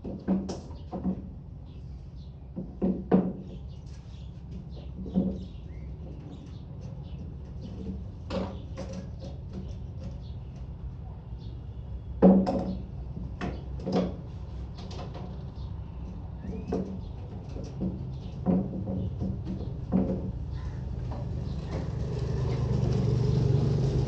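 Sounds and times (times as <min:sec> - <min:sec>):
woodworking knocks and clunks: 0:00.0 - 0:01.3, 0:02.5 - 0:03.7, 0:04.5 - 0:06.2, 0:12.2 - 0:14.2, 0:16.4 - 0:22.0.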